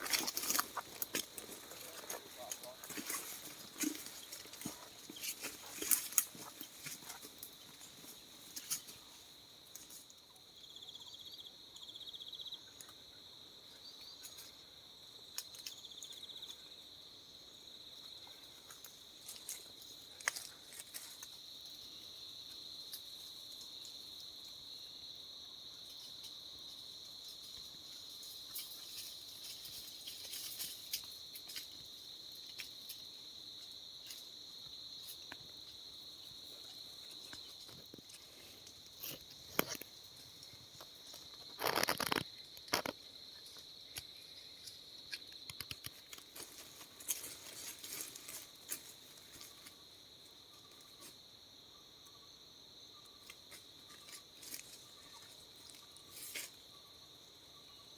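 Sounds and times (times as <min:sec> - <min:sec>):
insects trilling: 0:00.0 - 0:57.9
faint clicks and crackles: 0:40.7 - 0:49.4.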